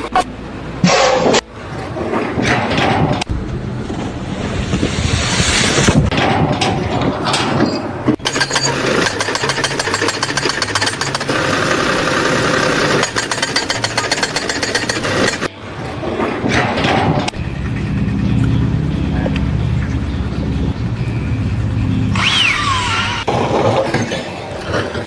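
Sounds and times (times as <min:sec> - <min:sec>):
engine noise: 0:00.0 - 0:25.0
mechanical hammering: 0:02.2 - 0:15.6.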